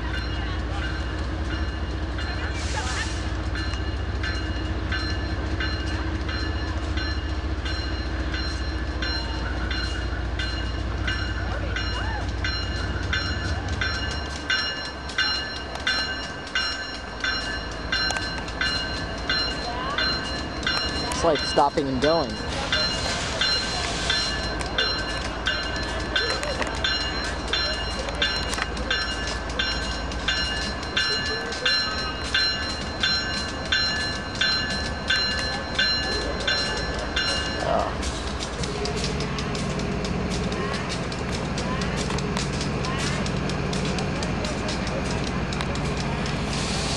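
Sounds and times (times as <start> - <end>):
freight train rumbling: 0.0 - 46.9
railroad warning bell ringing: 0.0 - 46.9.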